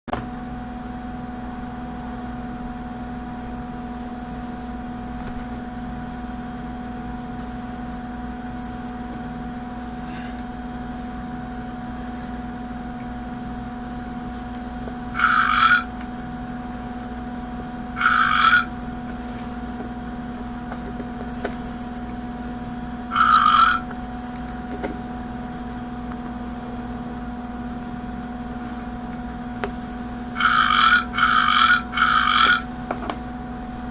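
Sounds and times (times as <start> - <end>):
alligator burp-like calls: 15.1 - 15.9, 18.0 - 18.8, 23.1 - 23.9, 30.4 - 32.7.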